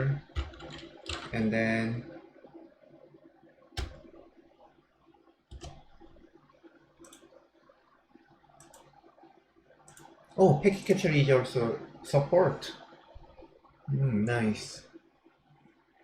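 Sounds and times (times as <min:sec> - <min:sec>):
computer mouse clicks: 0:00.3 - 0:01.4, 0:03.8 - 0:04.2, 0:05.5 - 0:06.2, 0:07.0 - 0:07.3, 0:08.6 - 0:09.0, 0:09.8 - 0:10.1.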